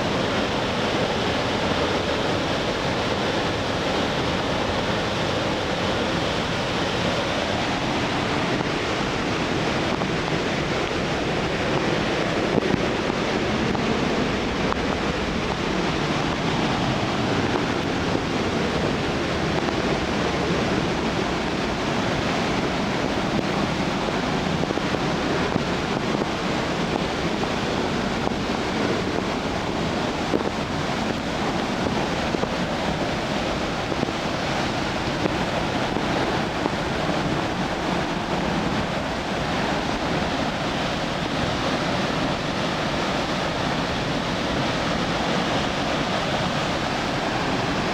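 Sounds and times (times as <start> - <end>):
waterfall rushing: 0.0 - 47.9.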